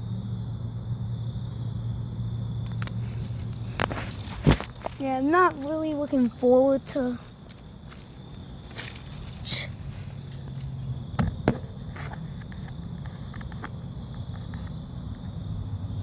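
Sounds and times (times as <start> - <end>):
steady low hum: 0.0 - 16.0
footsteps and scrapes: 2.6 - 13.7
sharp knocks: 11.2 - 11.7.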